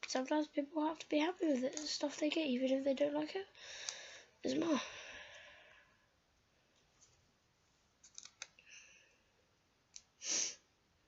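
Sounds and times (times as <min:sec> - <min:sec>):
plastic pieces clicking: 0:08.0 - 0:08.6.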